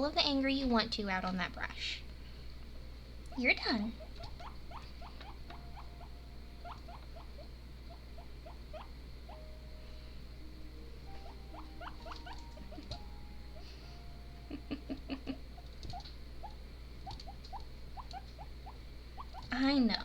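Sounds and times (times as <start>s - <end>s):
guinea pig squeaking: 3.3s - 9.6s, 11.0s - 13.7s, 15.3s - 20.0s.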